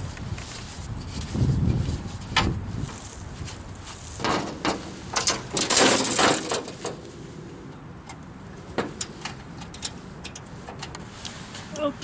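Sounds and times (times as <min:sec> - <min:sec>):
sawdust being brushed: 0:10.5 - 0:12.0.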